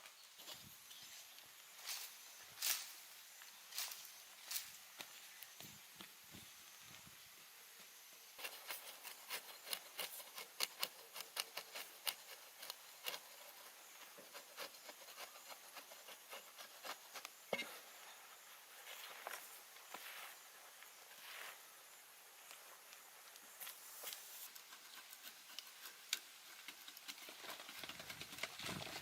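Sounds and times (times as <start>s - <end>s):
scraping and clicking of hand work: 8.4s - 17.7s, 22.5s - 29.0s.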